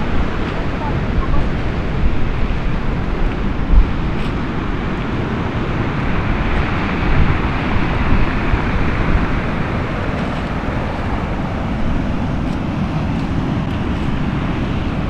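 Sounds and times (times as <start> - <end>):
storm surf on stony beach: 0.0 - 15.0
wind buffeting microphone: 0.0 - 15.0.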